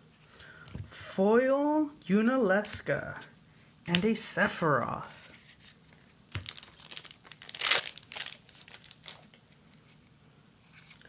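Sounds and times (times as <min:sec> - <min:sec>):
wrapper tearing and crinkling: 0:06.4 - 0:09.4.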